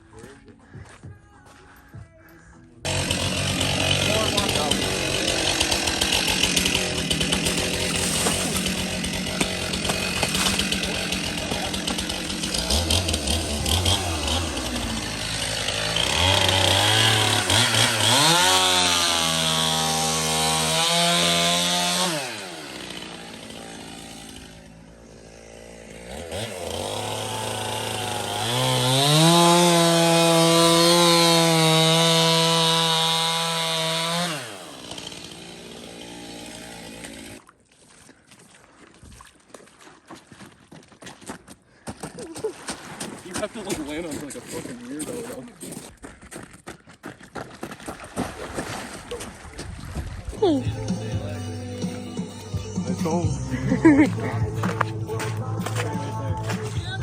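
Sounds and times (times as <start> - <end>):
ice auger engine revving: 2.8 - 37.4.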